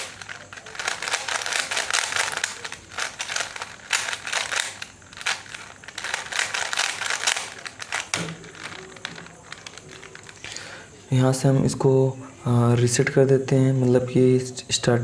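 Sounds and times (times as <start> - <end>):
puzzle cube clicking: 0.0 - 10.6.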